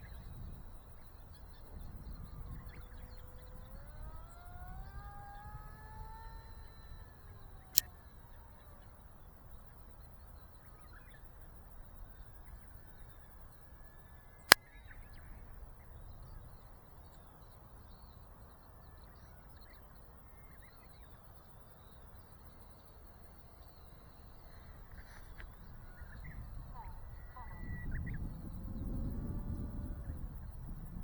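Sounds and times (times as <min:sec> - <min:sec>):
faint bird calls: 0:23.4 - 0:28.4.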